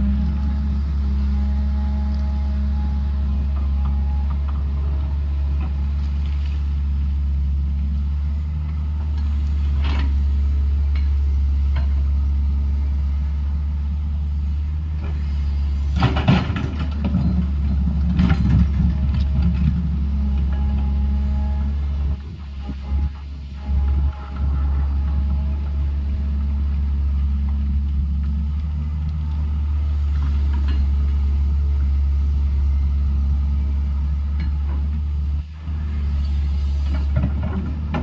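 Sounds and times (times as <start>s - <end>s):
diesel engine running: 0.0s - 38.0s
clanking and scraping: 15.0s - 26.0s, 30.1s - 31.2s, 35.7s - 38.0s.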